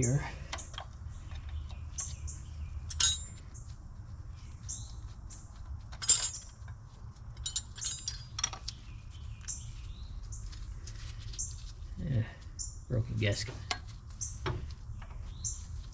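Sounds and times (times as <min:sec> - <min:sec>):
metal tools clinking and clanging: 0:02.9 - 0:03.4, 0:05.9 - 0:06.7, 0:07.3 - 0:08.8.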